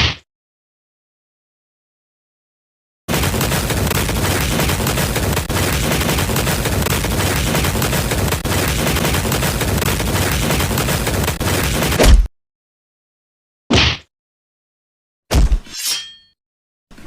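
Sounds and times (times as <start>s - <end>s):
machine-gun fire: 3.1s - 12.2s.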